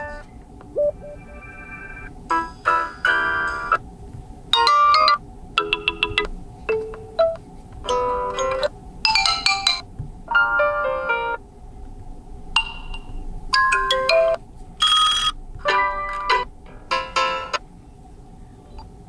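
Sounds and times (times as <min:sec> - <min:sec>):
phone ringtone melodies: 0:00.8 - 0:03.8, 0:04.6 - 0:09.8, 0:12.6 - 0:17.6.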